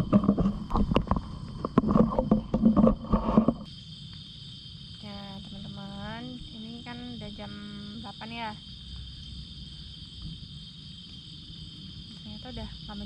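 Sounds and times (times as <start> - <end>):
knocking and rustling: 0.0 - 3.7
crickets chirring: 0.0 - 13.0
woman's voice: 5.0 - 8.6, 12.2 - 13.0.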